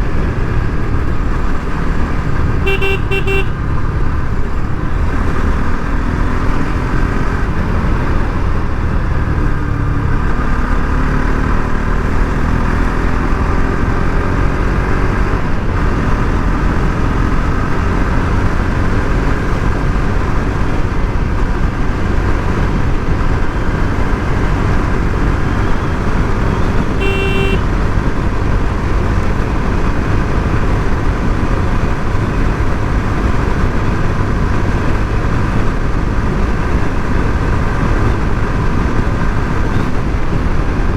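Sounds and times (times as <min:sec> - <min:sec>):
motorcycle engine rumble: 0:00.0 - 0:40.9
short horn beep: 0:02.6 - 0:03.6, 0:26.6 - 0:27.7.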